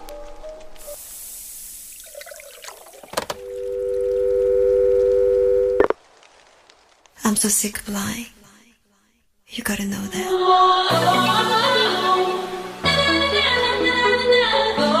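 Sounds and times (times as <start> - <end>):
music: 0.0 - 1.0, 10.4 - 15.0
faint hiss: 0.0 - 4.4
loud electronic tone: 3.3 - 5.9.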